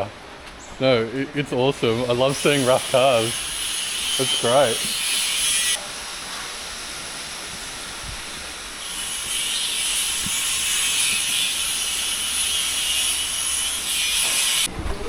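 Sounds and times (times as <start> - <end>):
compressed air hissing from air tool: 2.2 - 5.8.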